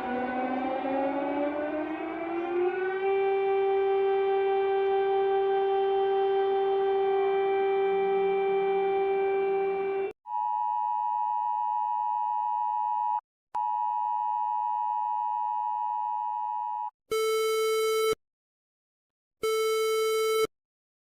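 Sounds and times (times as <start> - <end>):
low buzzy siren blasts: 0.0 - 10.1
steady high siren tone: 0.0 - 12.3.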